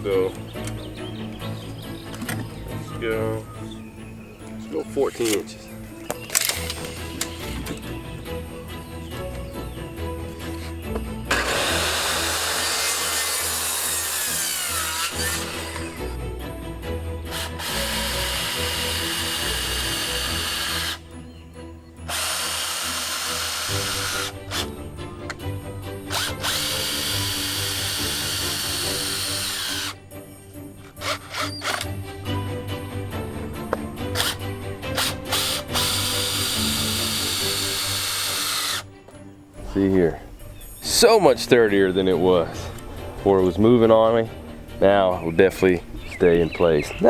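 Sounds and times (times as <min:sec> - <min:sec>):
background music: 0:00.0 - 0:47.0
power saw cutting wood: 0:10.4 - 0:16.2, 0:17.2 - 0:21.1, 0:22.0 - 0:30.0, 0:30.9 - 0:32.0, 0:33.7 - 0:38.9.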